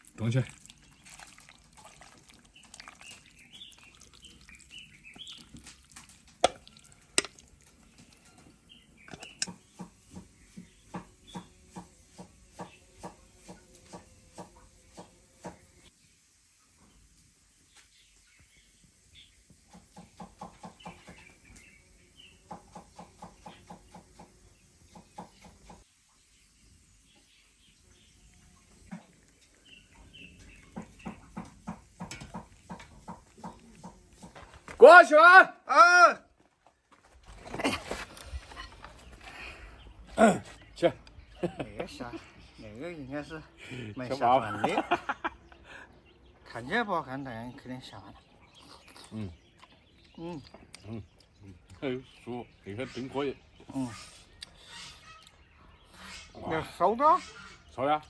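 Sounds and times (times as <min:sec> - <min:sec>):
birds chirping: 0:00.2 - 0:35.4, 0:36.7 - 0:58.0
pestle pounding in mortar: 0:06.4 - 0:07.4.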